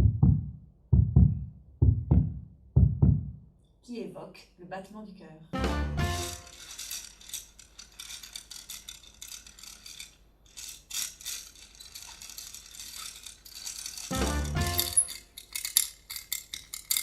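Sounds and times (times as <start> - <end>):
small object clicking and rattling: 6.2 - 17.0.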